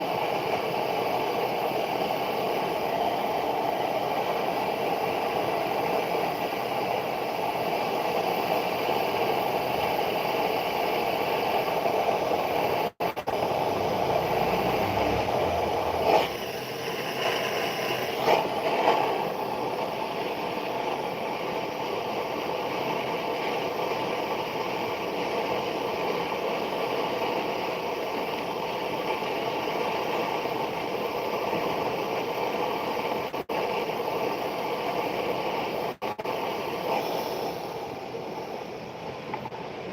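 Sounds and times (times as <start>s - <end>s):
small motor running: 13.4s - 16.5s.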